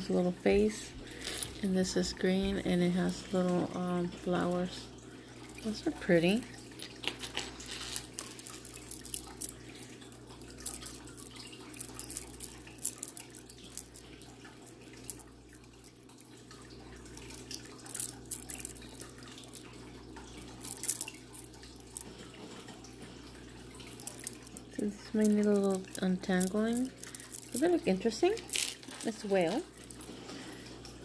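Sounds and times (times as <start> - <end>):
jewelry clinking together: 6.2 - 14.2, 17.0 - 19.7, 20.4 - 22.1, 23.9 - 30.1.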